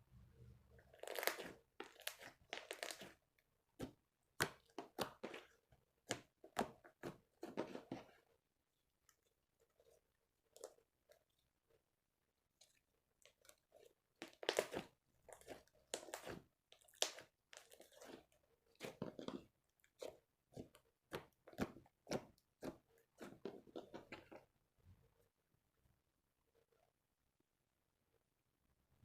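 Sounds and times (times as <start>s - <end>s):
slime squelching by hand: 0.8s - 11.8s, 12.5s - 24.5s.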